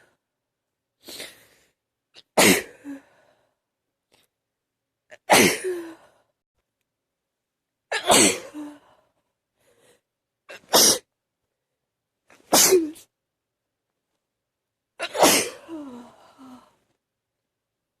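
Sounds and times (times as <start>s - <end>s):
person sneezing: 5.1s - 5.9s, 7.9s - 8.7s, 10.5s - 11.1s, 12.4s - 13.1s, 15.0s - 16.5s.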